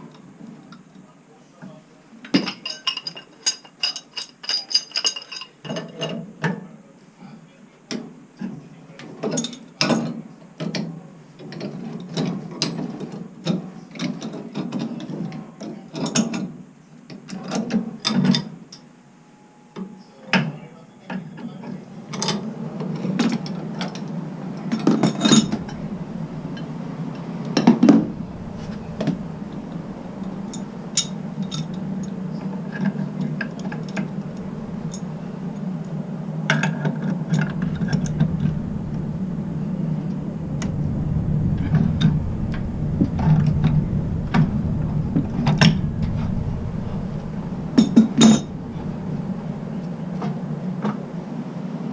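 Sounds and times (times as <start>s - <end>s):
steady low hum: 21.8s - 51.9s.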